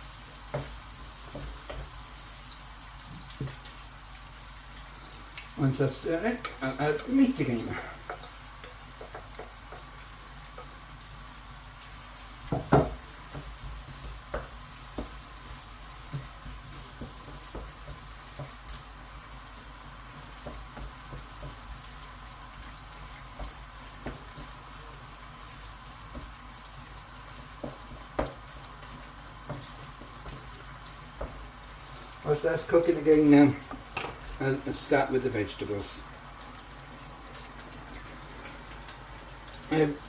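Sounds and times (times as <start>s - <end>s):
onions sizzling in hot oil: 0.0s - 40.0s
utensil knocking against a pan: 9.0s - 9.9s, 12.5s - 15.2s.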